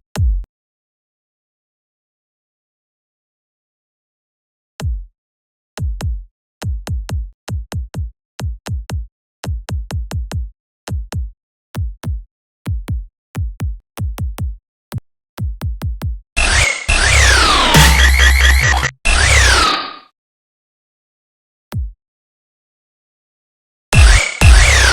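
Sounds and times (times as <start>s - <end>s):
electronic kick drum: 0.2s - 0.5s, 4.8s - 5.1s, 5.8s - 14.6s, 15.4s - 16.2s, 17.2s - 19.3s, 21.8s - 22.0s, 24.0s - 24.9s
loud dubstep music: 16.4s - 19.9s, 24.0s - 24.9s.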